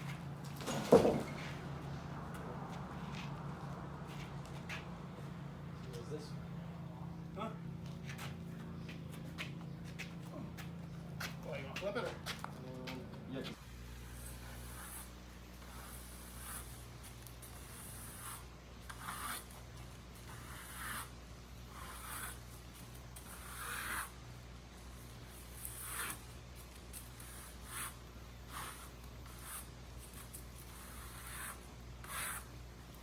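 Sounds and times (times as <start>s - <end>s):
scraping strokes: 24.9s - 32.6s.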